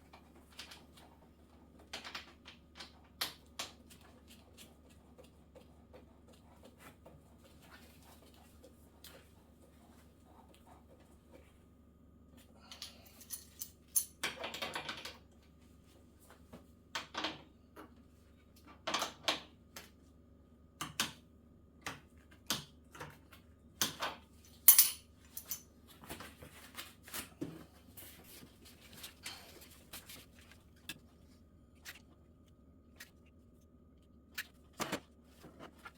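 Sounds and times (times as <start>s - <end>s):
faint steady hum: 0.0s - 35.9s.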